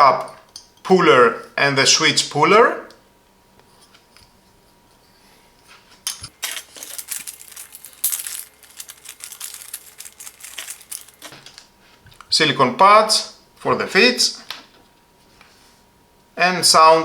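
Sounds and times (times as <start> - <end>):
plastic packaging crinkling: 6.2 - 12.3
small hard items clicking: 6.2 - 12.3.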